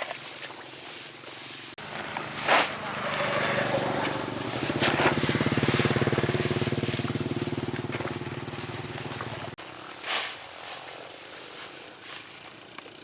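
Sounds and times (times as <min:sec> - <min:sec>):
rustling and crunching: 0:00.0 - 0:13.0
small engine running: 0:01.8 - 0:09.6.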